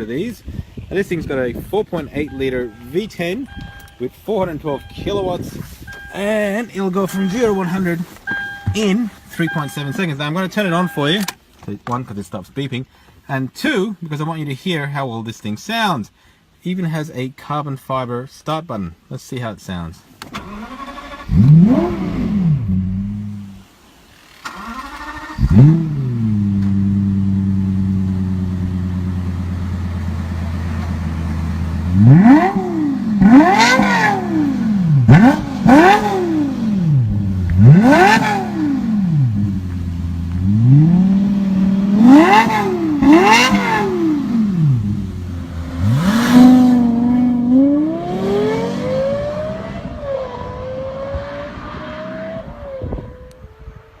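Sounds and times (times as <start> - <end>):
car engine starting and idling: 0.9 - 11.8, 20.2 - 54.0
engine revving: 20.4 - 23.5, 24.4 - 53.8.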